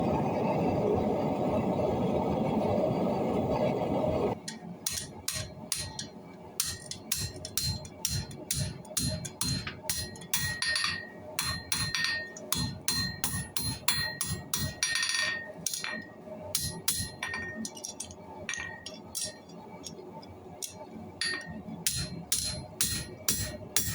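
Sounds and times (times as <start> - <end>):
steady rushing noise: 0.0 - 14.7
anvil ringing: 4.4 - 19.5, 20.6 - 23.9
hammer striking steel on anvil: 4.4 - 20.0, 20.6 - 23.9.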